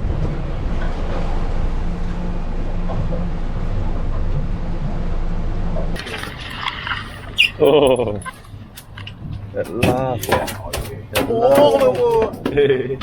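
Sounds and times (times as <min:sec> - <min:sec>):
water noise: 0:00.0 - 0:09.3
boat engine humming: 0:00.0 - 0:10.2
wind: 0:00.0 - 0:13.0.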